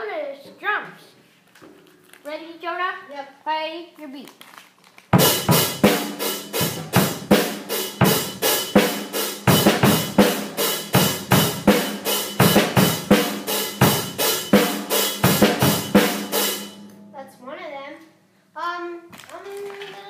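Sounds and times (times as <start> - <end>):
drum kit beat: 5.2 - 16.9.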